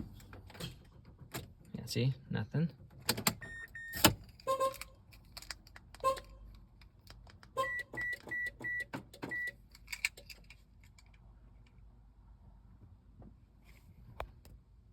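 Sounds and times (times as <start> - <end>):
car warning chime beeping: 3.4 - 4.7, 7.6 - 9.6.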